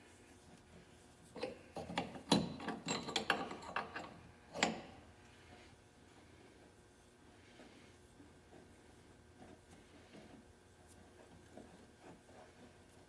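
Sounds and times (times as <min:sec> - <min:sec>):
hand tools clinking and knocking: 0:01.4 - 0:05.0.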